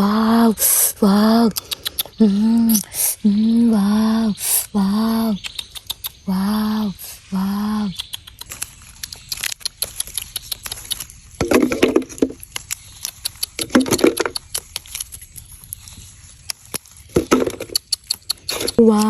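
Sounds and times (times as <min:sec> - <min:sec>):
hands clicking and tapping objects: 0:01.5 - 0:02.9, 0:05.4 - 0:06.2, 0:07.9 - 0:15.8, 0:16.4 - 0:19.0.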